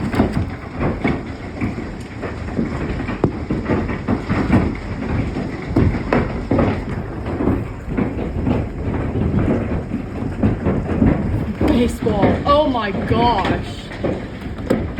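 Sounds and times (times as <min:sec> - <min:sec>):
large hailstones pounding: 0:00.0 - 0:14.9
rushing storm noise: 0:00.0 - 0:14.9.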